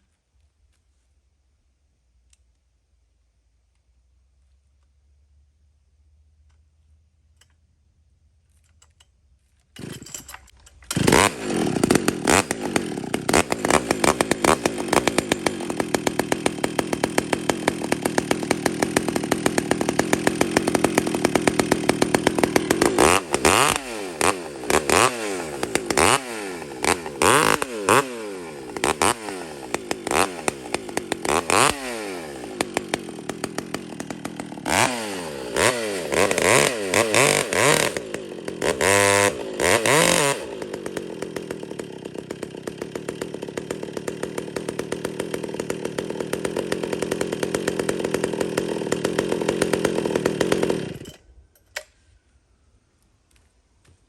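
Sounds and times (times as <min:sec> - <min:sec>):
chainsaw running: 0:09.8 - 0:51.9.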